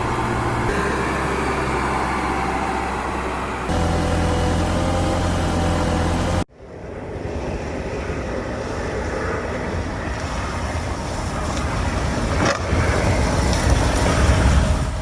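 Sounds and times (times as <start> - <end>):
snow-clearing machinery rushing: 0.0 - 6.5.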